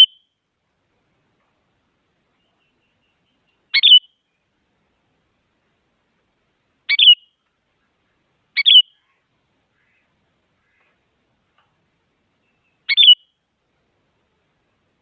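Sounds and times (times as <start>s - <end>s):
bird sharp two-part calls: 0.0s - 0.3s, 2.6s - 4.2s, 6.9s - 7.4s, 8.6s - 9.2s, 12.4s - 13.4s.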